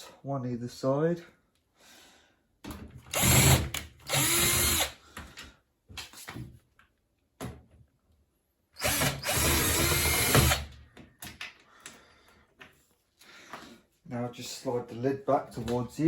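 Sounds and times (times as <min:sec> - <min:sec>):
cordless drill running: 0:03.1 - 0:05.0, 0:08.8 - 0:10.7.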